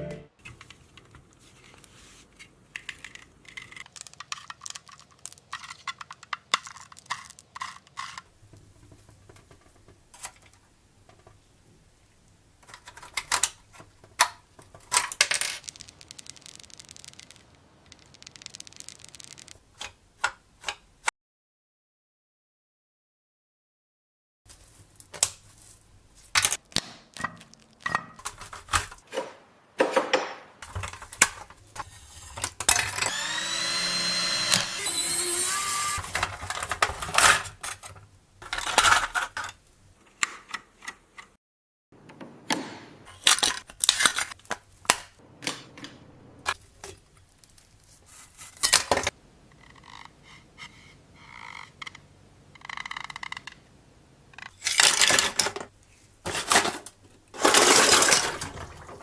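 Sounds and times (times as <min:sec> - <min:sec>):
metal parts clinking: 0:14.9 - 0:19.6
small power tool whining: 0:33.0 - 0:36.0.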